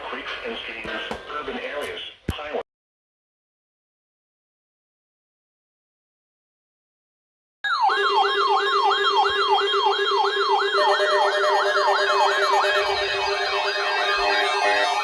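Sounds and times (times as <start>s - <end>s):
repeated falling siren sweep: 7.7s - 15.0s.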